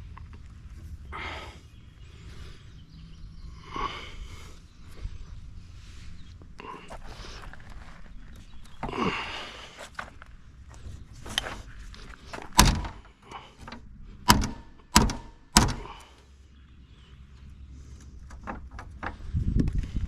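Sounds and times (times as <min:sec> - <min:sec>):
metal knocks and clanks: 0:12.4 - 0:15.9.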